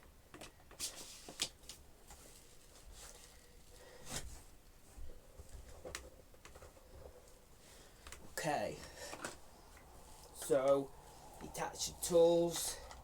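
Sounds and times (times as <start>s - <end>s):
vacuum attachments clicking and knocking: 9.1s - 9.4s.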